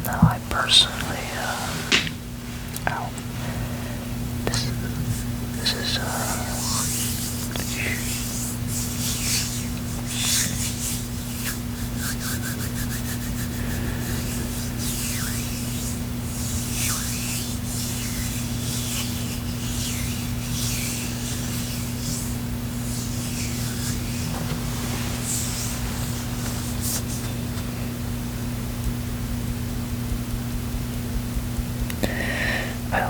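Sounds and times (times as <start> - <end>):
steady low hum: 0.0 - 33.0
hands rubbing together: 0.1 - 2.2, 4.5 - 27.8.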